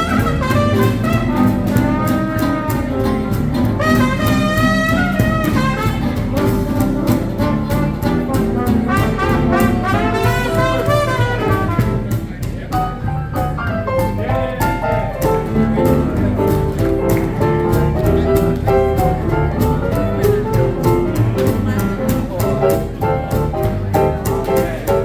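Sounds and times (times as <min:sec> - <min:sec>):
brass solo: 0:00.0 - 0:12.1
swing rhythm section: 0:00.0 - 0:25.0.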